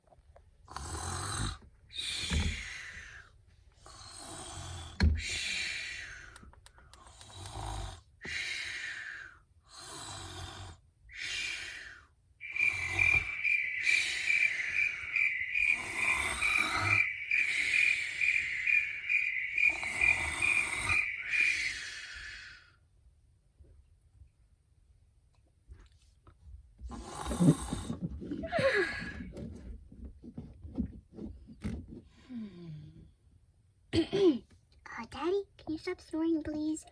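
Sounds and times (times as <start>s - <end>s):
snoring: 0.7s - 2.6s, 3.9s - 5.4s, 7.1s - 8.1s, 9.7s - 10.8s, 26.9s - 28.0s
pulsing high whistling tone: 12.4s - 22.5s.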